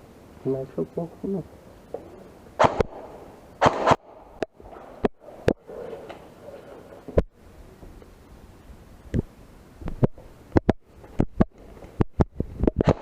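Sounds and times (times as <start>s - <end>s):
airsoft gun shots: 2.6s - 4.2s, 12.8s - 13.0s.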